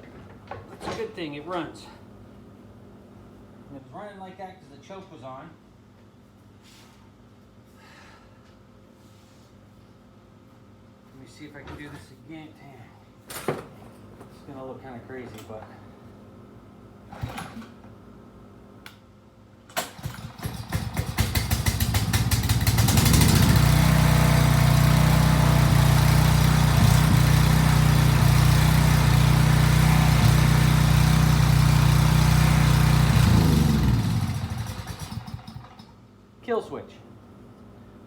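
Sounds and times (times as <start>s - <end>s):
small gas engine running: 19.8s - 35.9s.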